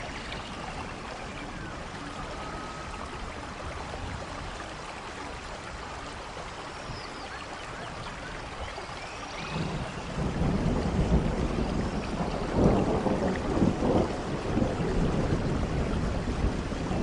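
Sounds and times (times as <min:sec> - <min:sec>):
rain falling: 0:00.0 - 0:17.0
thunder rumbling: 0:09.4 - 0:17.0.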